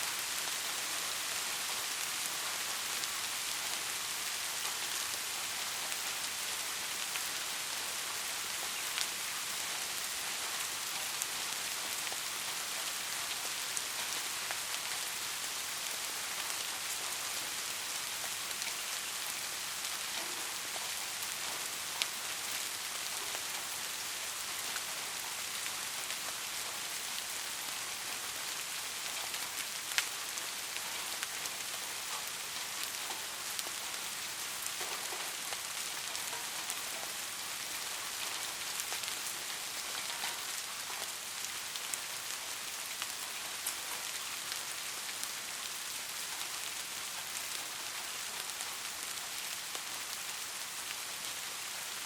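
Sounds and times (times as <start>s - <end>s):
soft rain falling: 0.0s - 52.0s
raindrop ticking nearby: 0.1s - 51.0s.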